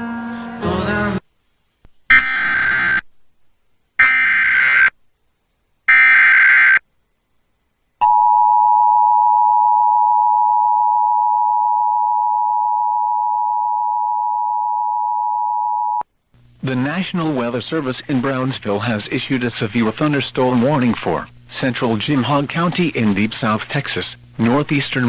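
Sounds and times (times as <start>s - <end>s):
harsh digital data screech: 2.1s - 3.0s, 4.0s - 4.9s.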